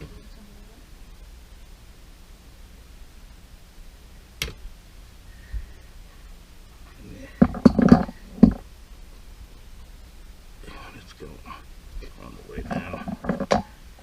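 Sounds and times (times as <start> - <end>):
hard parts clicking and knocking: 7.4 - 8.6, 12.6 - 13.7.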